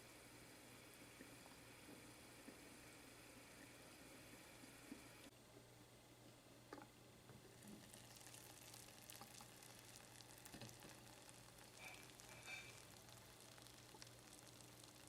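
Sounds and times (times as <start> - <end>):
low steady hum: 0.0 - 15.0
food sizzling and crackling: 7.5 - 15.0.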